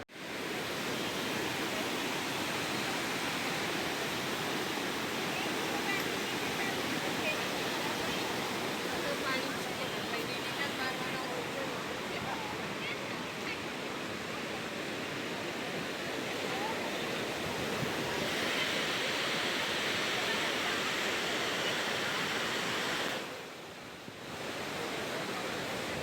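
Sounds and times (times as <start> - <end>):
fast-flowing water rushing: 0.0 - 26.0.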